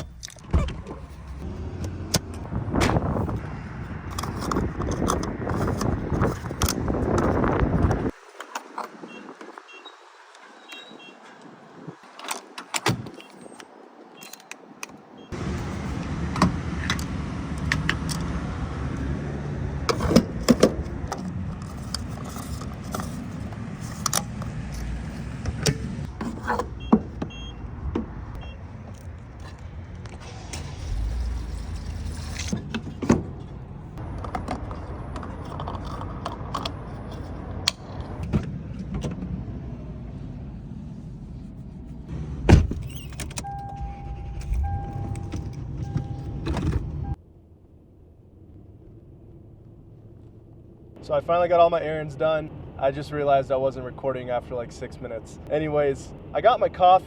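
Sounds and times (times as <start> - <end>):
low engine rumble: 15.3 - 57.0.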